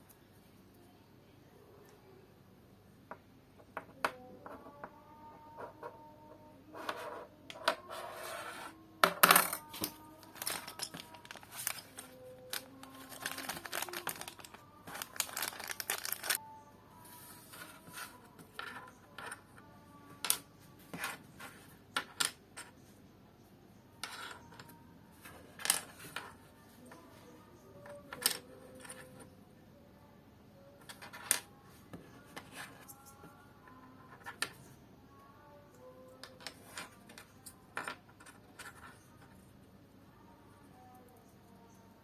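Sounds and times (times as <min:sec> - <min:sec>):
plastic pieces clicking and clattering: 0:09.1 - 0:16.4.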